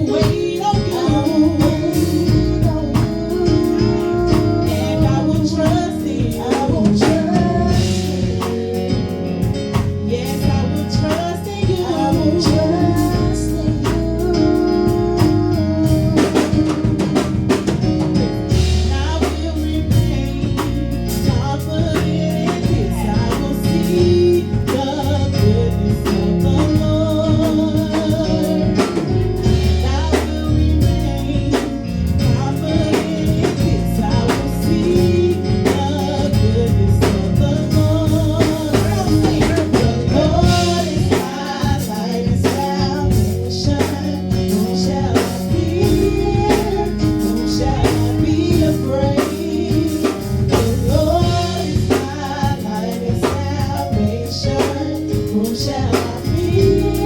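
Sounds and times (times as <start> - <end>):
live gospel band with drums: 0.0 - 57.0
person singing: 0.0 - 57.0.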